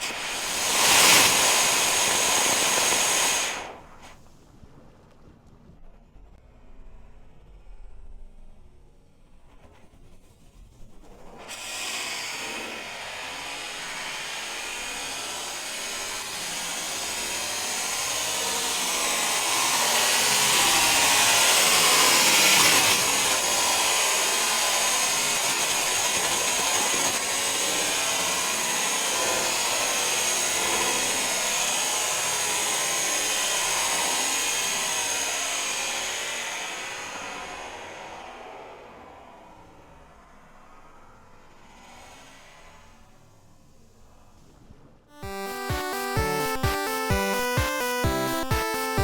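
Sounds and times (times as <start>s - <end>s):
firework fountain hissing: 0.0s - 4.1s.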